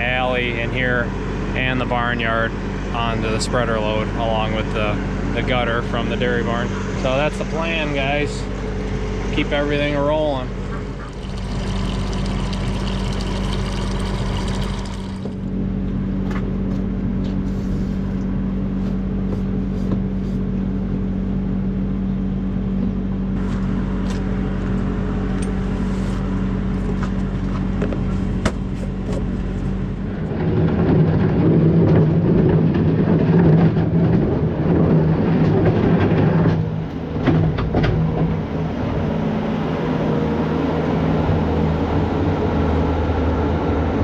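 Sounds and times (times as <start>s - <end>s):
skid steer engine running: 0.0s - 19.3s.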